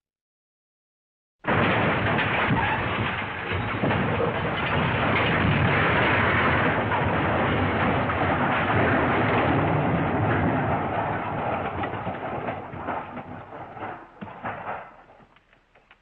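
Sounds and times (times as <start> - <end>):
loud rumbling crash: 1.4 - 15.3.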